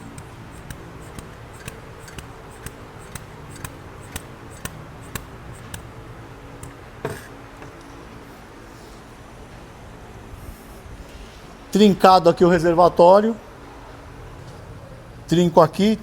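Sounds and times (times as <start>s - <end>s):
hand pump clicking: 0.0s - 7.3s
steady low hum: 0.0s - 16.0s.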